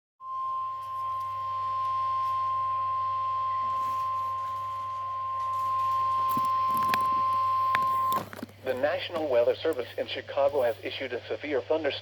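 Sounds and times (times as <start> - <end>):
steady high-pitched alarm tone: 0.2 - 11.2
faint low hum: 0.3 - 12.0.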